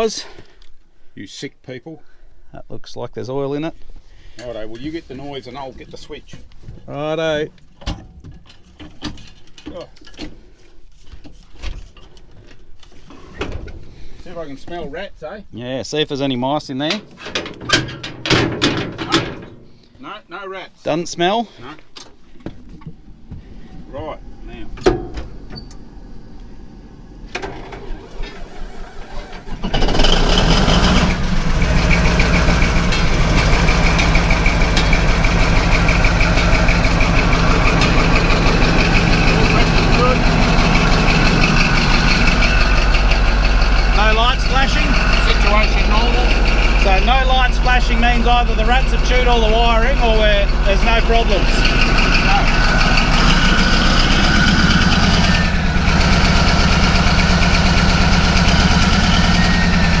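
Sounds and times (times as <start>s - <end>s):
diesel engine idling: 23.0s - 60.0s.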